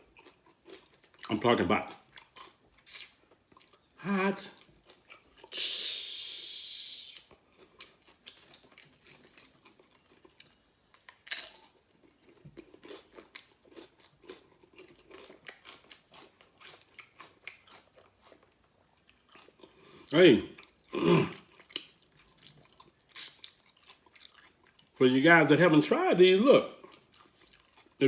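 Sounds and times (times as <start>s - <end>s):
crunching tortilla chips: 0.0s - 25.0s, 26.9s - 28.0s
loud hiss: 5.6s - 7.2s.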